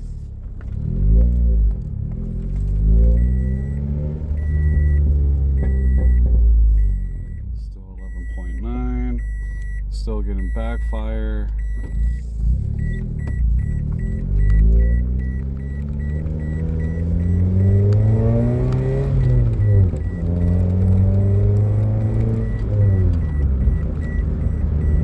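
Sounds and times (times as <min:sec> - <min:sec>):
car engine accelerating through gears: 0:00.0 - 0:10.6, 0:11.5 - 0:25.0
faint high beep: 0:04.4 - 0:18.2.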